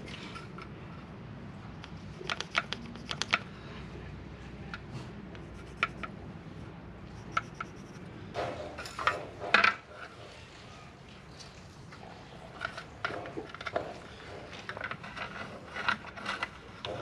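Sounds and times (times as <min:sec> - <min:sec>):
tools clattering: 0:08.4 - 0:09.9.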